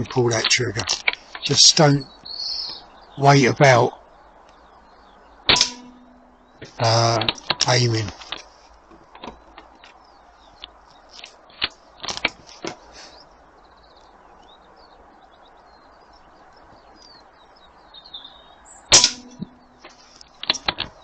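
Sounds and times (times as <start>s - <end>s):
birds chirping faintly: 0.0s - 21.0s
air rifle shot with humming ring: 5.5s - 6.5s, 18.9s - 19.8s.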